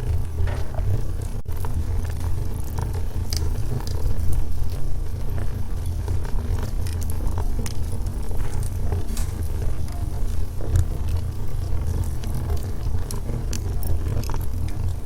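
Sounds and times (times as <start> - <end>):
burning wood crackling: 0.0 - 15.0
fire rumbling: 0.0 - 15.0.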